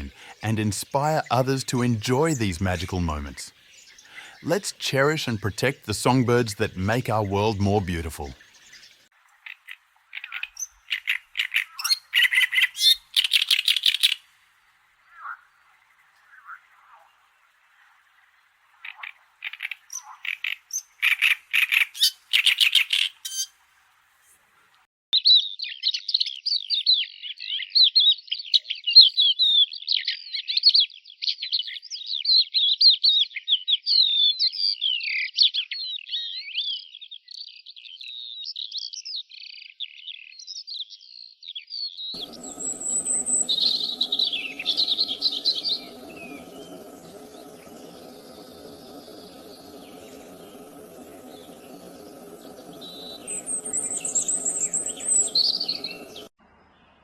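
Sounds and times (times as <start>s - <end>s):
bird chattering: 0.0s - 3.5s, 42.2s - 56.3s
bird chip notes: 0.0s - 3.5s, 42.2s - 56.3s
rapid warbling birdsong: 0.0s - 23.5s, 42.1s - 57.0s
low background rumble: 42.2s - 56.3s.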